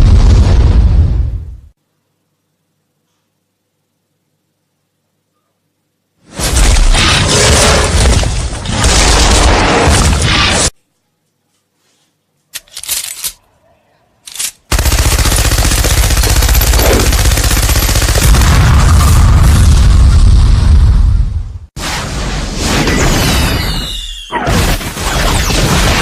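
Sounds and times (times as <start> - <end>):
machine-gun fire: 14.7 - 20.1.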